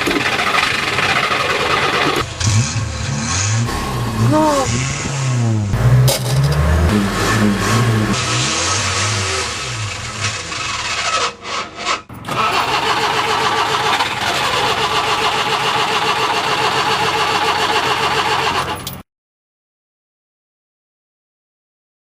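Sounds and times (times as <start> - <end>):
engine cranking by starter motor: 0.0 - 2.7, 6.0 - 19.0.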